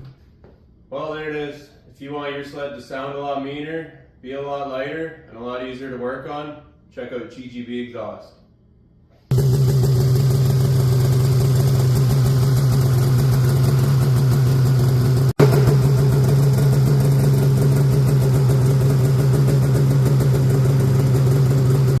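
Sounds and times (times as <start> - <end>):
snowmobile engine idling: 9.3 - 22.0.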